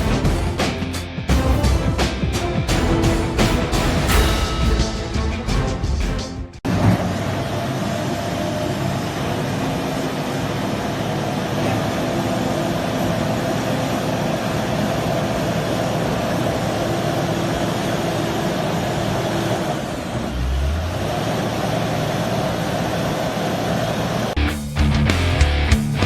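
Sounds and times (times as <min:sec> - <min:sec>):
wheel loader engine running: 0:06.4 - 0:24.4.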